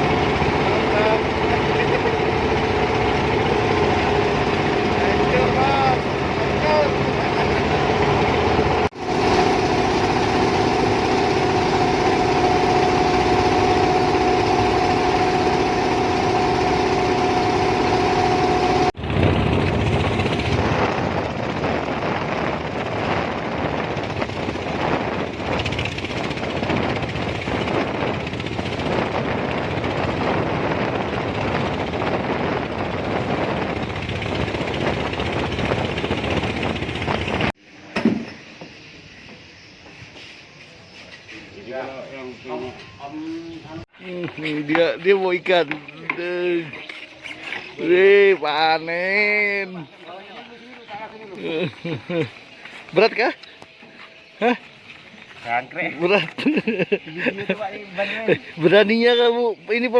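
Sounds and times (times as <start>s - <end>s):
boat engine running: 0.0s - 37.6s.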